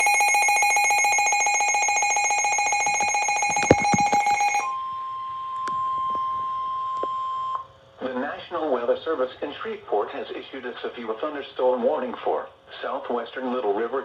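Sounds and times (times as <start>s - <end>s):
steady alarm tone: 0.0s - 6.7s
rapidly pulsing radio alarm: 0.0s - 6.8s.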